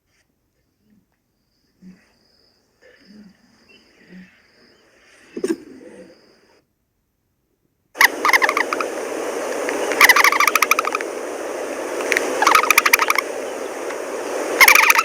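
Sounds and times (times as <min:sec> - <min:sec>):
bird rattling call: 0:08.0 - 0:15.0
steady background noise: 0:08.0 - 0:15.0.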